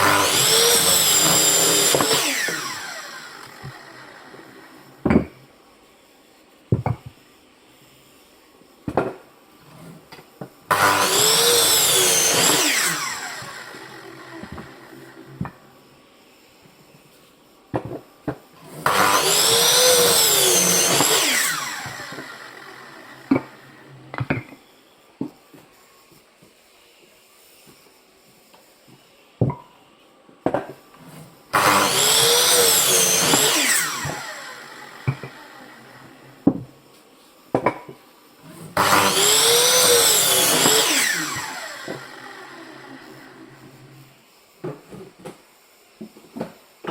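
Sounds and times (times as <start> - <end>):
electric saw cutting wood: 0.0 - 5.1, 10.7 - 15.6, 18.6 - 24.4, 31.0 - 36.7, 38.4 - 44.8.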